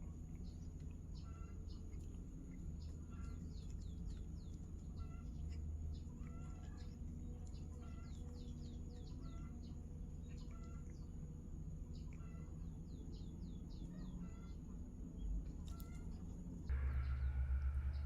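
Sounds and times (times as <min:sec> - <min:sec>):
low background rumble: 0:00.0 - 0:18.0
small birds chirping: 0:00.0 - 0:18.0
thin high-pitched whine: 0:16.7 - 0:18.0.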